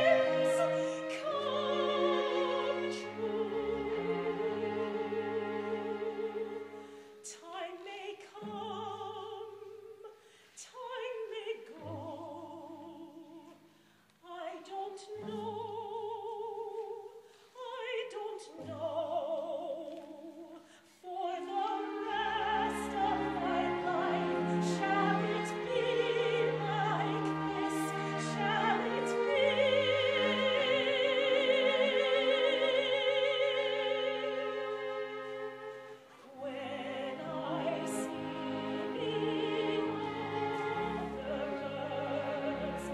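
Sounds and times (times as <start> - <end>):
opera singer with vibrato: 0.0 - 42.9
orchestra playing: 21.2 - 32.8, 33.4 - 42.9.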